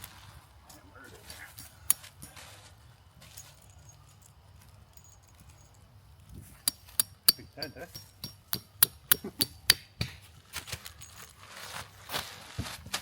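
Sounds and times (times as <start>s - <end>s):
sharp click of tent parts: 1.4s - 2.4s, 6.2s - 11.2s.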